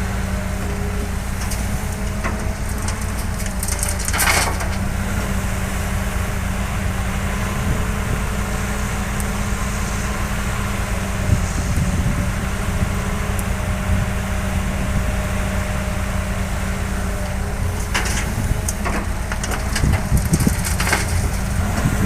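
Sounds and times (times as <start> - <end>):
diesel engine running steadily: 0.0 - 22.0.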